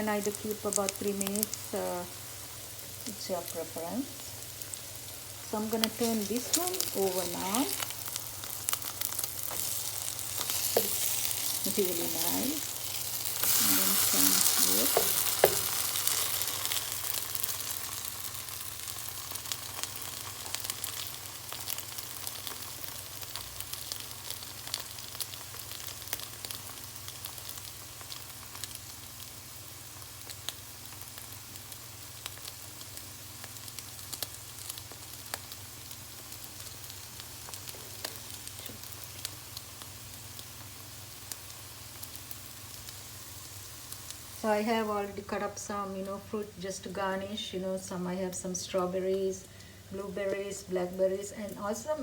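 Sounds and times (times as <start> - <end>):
bread sizzling in a frying pan: 0.0 - 52.0
small pops and crackles: 30.0 - 43.0.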